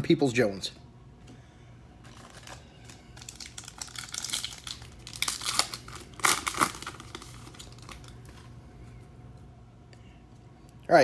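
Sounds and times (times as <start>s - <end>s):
card pack wrapper crinkling: 2.0s - 8.4s.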